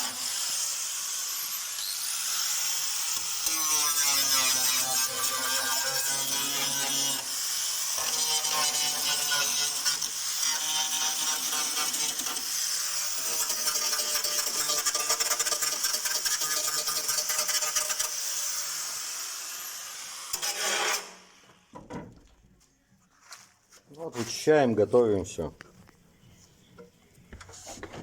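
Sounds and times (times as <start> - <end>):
angle grinder grinding metal: 0.0 - 21.3.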